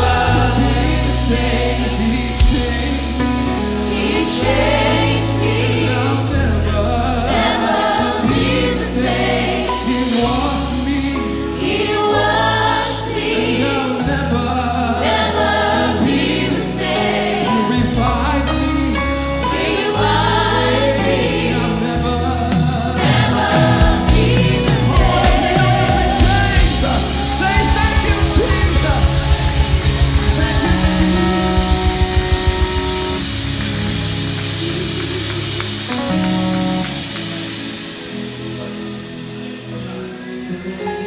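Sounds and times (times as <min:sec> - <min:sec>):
church choir singing gospel: 0:00.0 - 0:41.0
instrumental accompaniment: 0:00.0 - 0:41.0
held bass note: 0:23.6 - 0:37.7.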